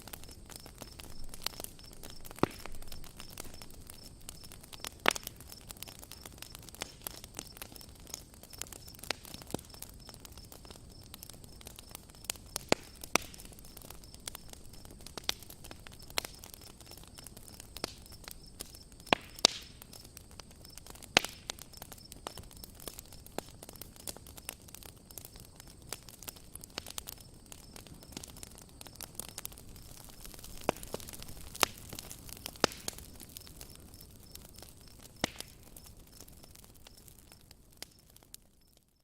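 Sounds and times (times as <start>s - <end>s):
sharp pops of fire: 0.0s - 38.9s
campfire wood crackling: 0.0s - 39.0s.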